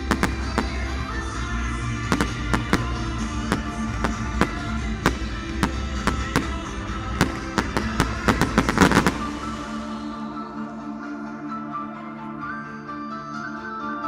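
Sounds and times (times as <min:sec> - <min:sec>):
fireworks bangs and crackles: 0:00.0 - 0:09.9
music with held notes: 0:00.0 - 0:14.0.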